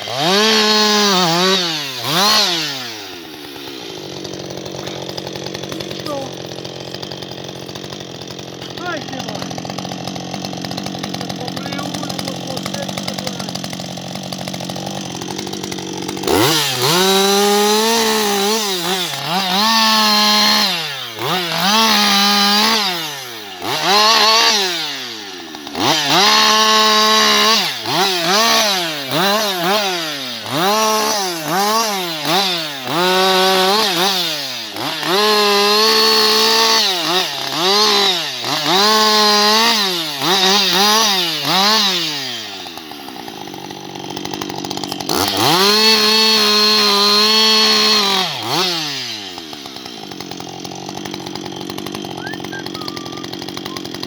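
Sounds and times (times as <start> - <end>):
chainsaw engine revving: 0.0 - 54.0.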